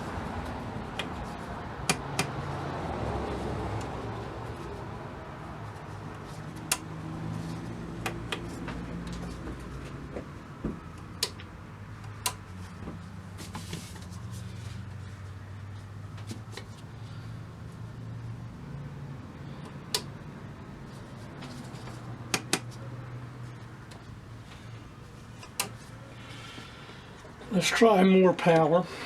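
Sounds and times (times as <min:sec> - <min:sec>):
sharp clicks and light knocks: 0:00.9 - 0:02.4, 0:06.2 - 0:14.2, 0:19.6 - 0:20.2, 0:21.2 - 0:22.9, 0:25.3 - 0:26.0.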